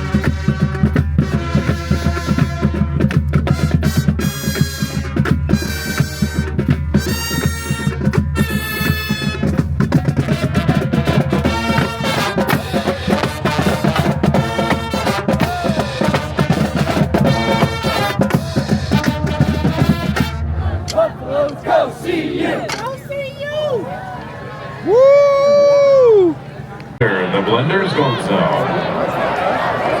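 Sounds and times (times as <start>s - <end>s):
drums beating: 0.0s - 24.0s
horn chords: 0.0s - 24.9s.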